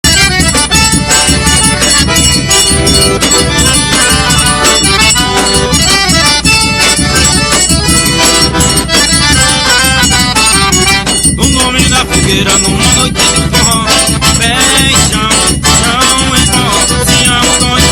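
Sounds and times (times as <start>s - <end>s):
accordion: 0.0s - 17.9s
driving beat: 0.0s - 17.9s.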